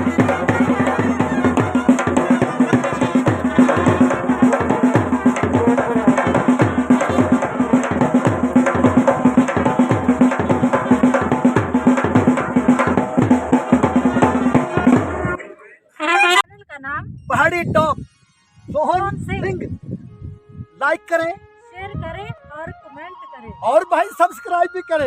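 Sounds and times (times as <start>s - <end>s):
fast drumming: 0.0s - 15.4s.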